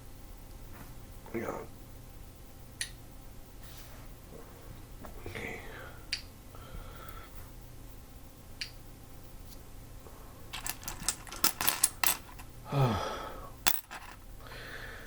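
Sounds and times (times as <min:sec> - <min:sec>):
small hard objects clicking: 0:13.7 - 0:14.2.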